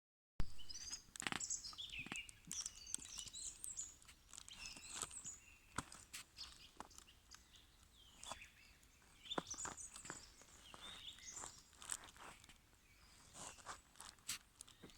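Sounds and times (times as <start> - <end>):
songbirds chirping: 0.5 - 14.9
footsteps on forest floor: 0.6 - 14.9.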